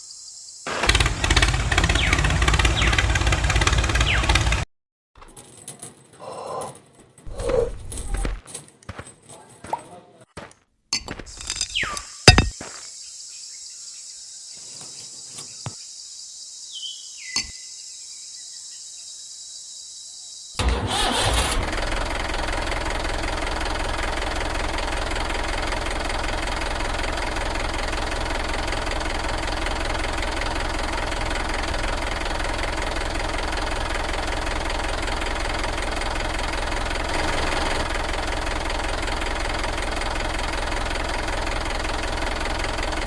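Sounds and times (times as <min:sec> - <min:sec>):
engine idling with knocking: 0:00.7 - 0:04.6, 0:20.6 - 0:43.0.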